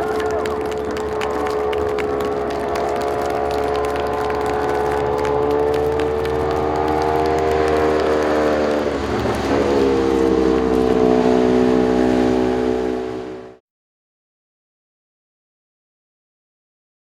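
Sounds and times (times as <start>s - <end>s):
racing motorcycle engine revving: 0.0s - 13.6s.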